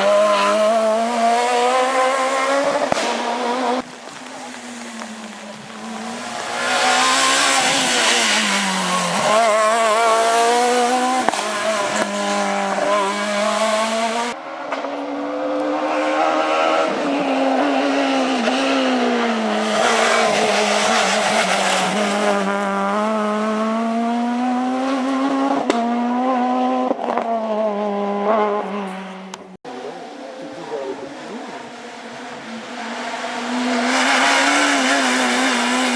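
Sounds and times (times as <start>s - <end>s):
rally car engine revving: 0.0s - 35.9s.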